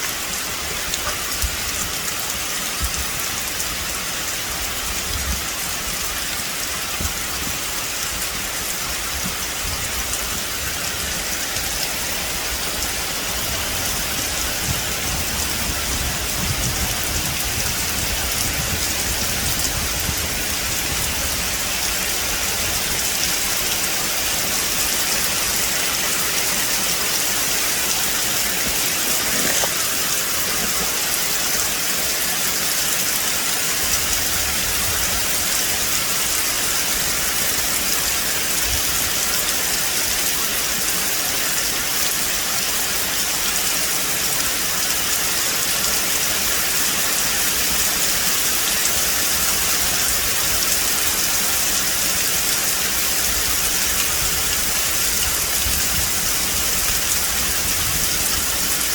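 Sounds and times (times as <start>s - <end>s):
rain on leaves: 0.0s - 58.9s.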